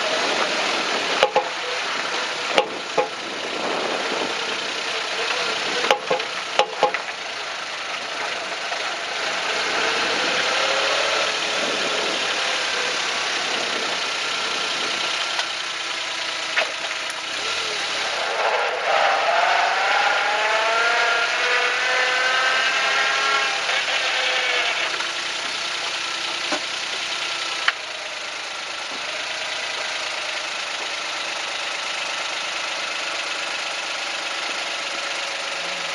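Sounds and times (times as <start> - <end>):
car engine running: 0.0 - 35.9
road noise: 0.0 - 35.9
sharp knocks: 5.9 - 7.1.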